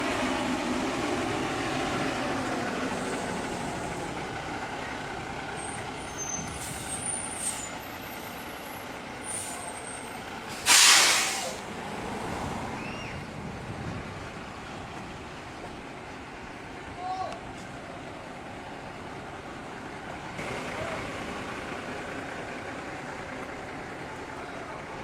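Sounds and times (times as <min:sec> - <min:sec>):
large vehicle engine rumble: 0:00.0 - 0:25.0
compressed air hiss: 0:10.5 - 0:11.6.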